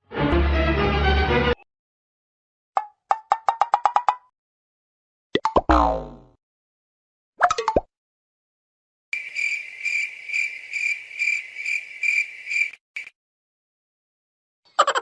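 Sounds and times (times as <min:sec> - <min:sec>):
cricket chirping: 0:09.2 - 0:13.1.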